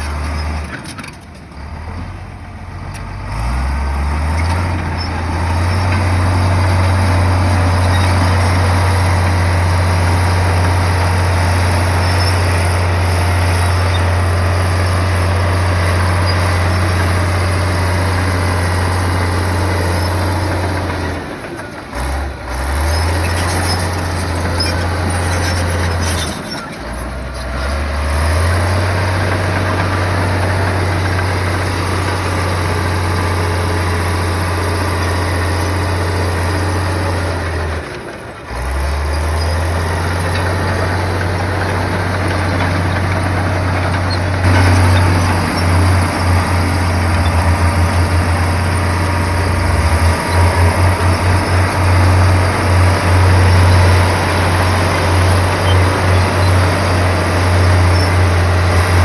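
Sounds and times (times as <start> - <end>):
heavy machine diesel engine: 0.0 - 59.0.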